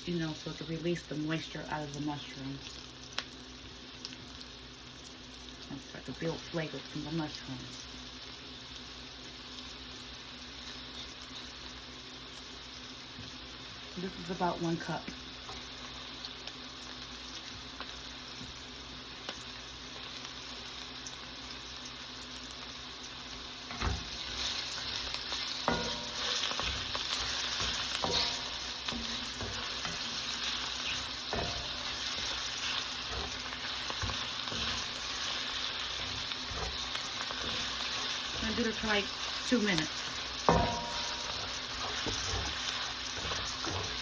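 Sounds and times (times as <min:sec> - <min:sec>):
mushrooms sizzling in a skillet: 0:00.0 - 0:44.0
utensil knocking against pan: 0:40.5 - 0:42.5.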